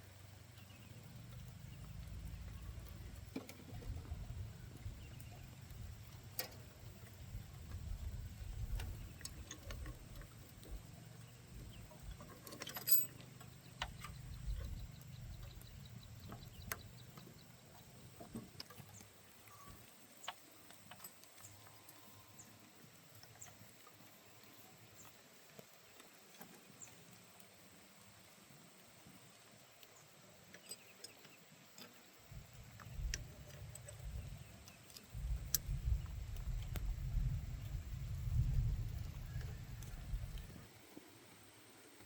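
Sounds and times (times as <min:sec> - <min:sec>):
light clicks and taps: 0:04.8 - 0:22.2.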